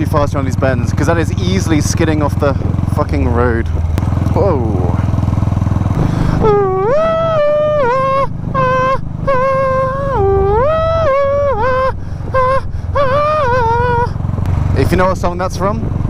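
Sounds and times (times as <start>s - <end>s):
motorcycle engine running: 0.0s - 16.0s
man singing: 6.4s - 14.1s.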